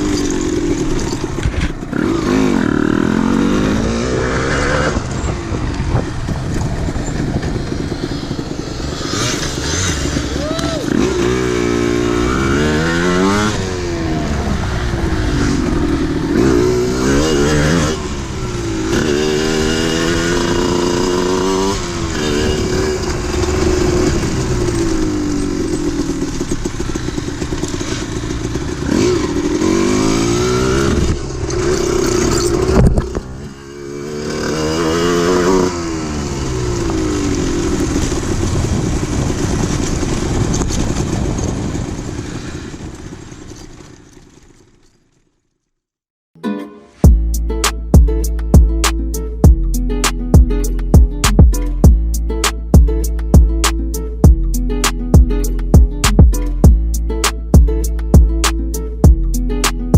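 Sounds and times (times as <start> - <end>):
motorcycle engine revving: 0.0 - 44.7.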